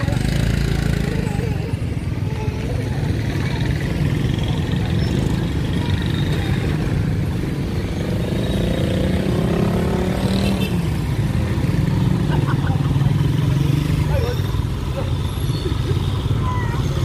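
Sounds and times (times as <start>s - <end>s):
small motorcycle engine revving: 3.1s - 14.8s.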